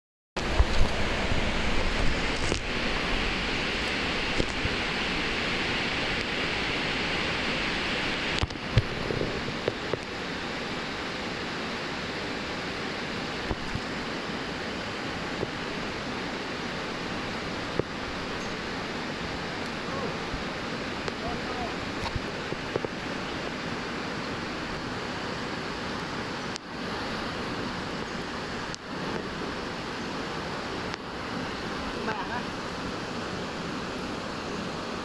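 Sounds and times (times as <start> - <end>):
river water flowing: 0.4 - 35.0.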